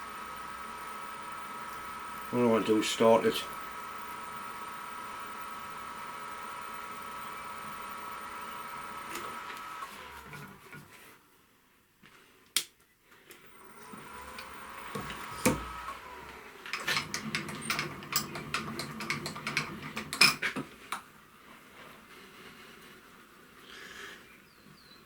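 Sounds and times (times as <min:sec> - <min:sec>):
machine motor whine: 0:00.0 - 0:10.8, 0:13.5 - 0:19.9.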